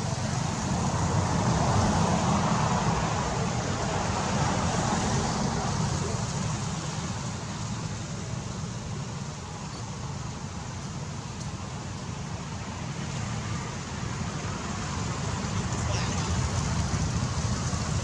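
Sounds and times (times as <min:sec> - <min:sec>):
road traffic noise: 0:00.0 - 0:18.0.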